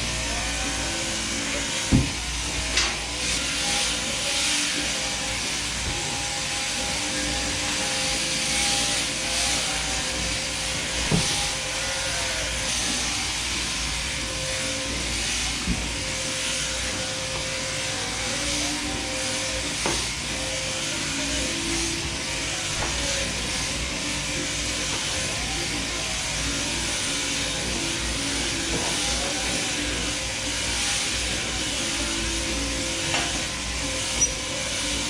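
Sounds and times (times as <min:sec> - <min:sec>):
shearing handpiece buzzing: 0:00.0 - 0:35.0.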